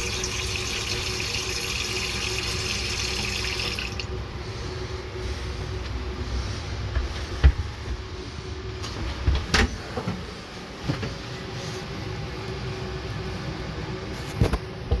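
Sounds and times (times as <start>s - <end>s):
airliner cabin drone: 4.0s - 15.0s.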